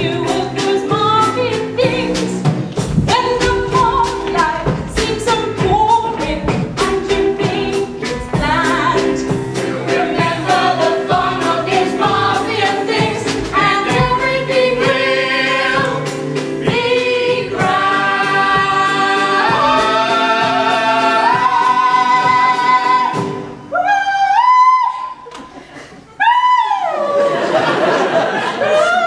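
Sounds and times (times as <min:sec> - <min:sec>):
musical accompaniment: 0:00.0 - 0:25.3
several voices singing: 0:03.2 - 0:23.4.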